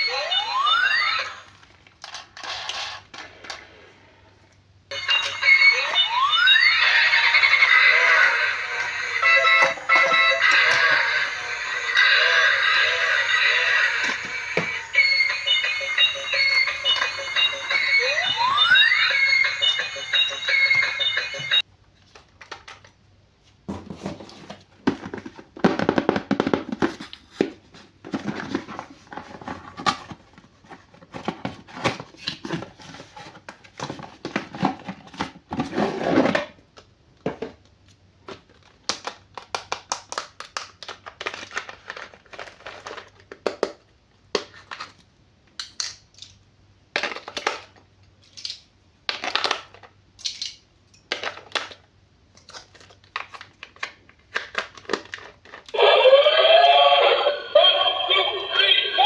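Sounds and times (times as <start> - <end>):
electronic toy sounds: 0.0 - 1.4, 4.9 - 21.6, 55.8 - 59.0.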